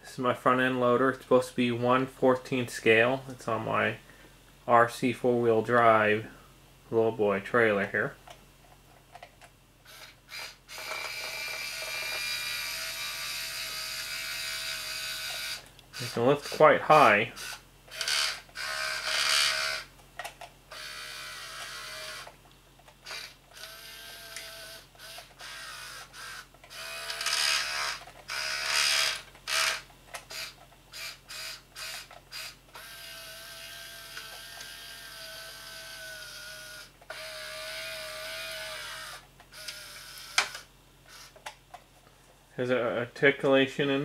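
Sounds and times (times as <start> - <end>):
small electric gear motors whining: 9.8 - 19.9, 20.7 - 41.5.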